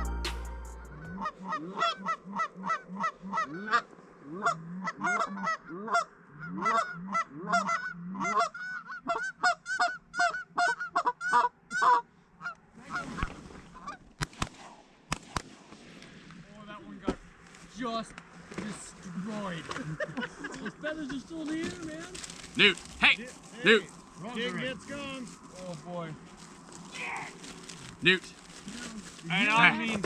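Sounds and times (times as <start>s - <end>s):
goose honking: 0.8s - 13.1s.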